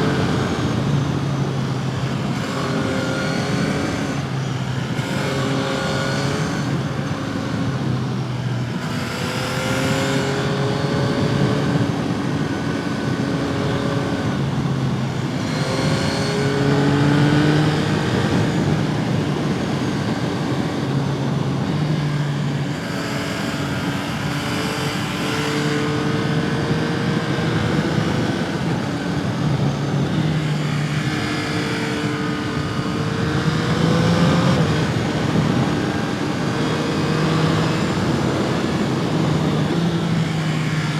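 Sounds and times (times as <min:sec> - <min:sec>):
motorcycle engine accelerating: 0:00.0 - 0:40.9
wind rush: 0:10.4 - 0:40.9.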